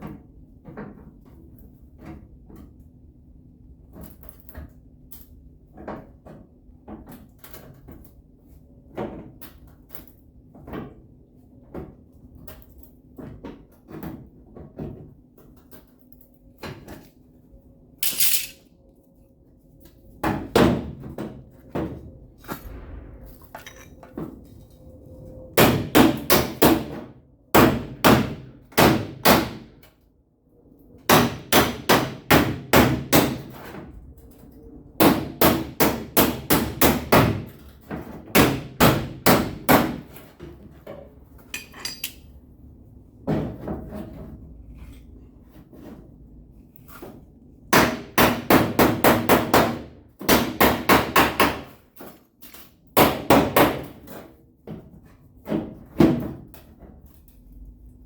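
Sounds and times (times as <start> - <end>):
hammer striking sheet metal: 41.6 - 42.2.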